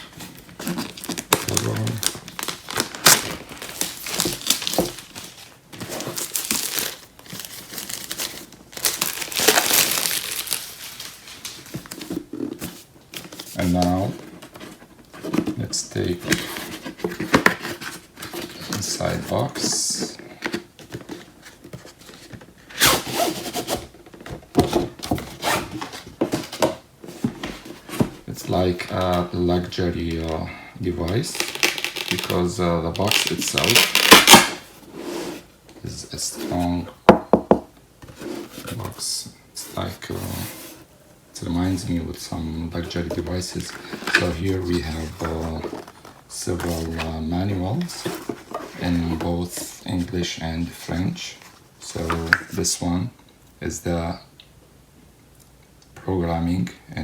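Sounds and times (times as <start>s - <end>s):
plastic wrapping crinkling: 0.0s - 19.8s, 31.0s - 34.7s, 41.6s - 50.1s.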